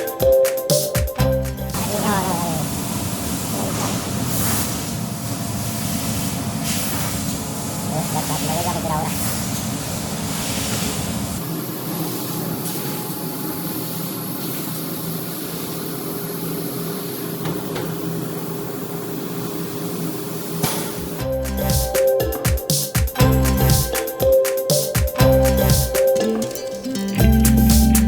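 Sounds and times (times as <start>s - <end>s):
music: 0.0s - 1.8s, 21.2s - 28.0s
hiss: 1.8s - 21.2s.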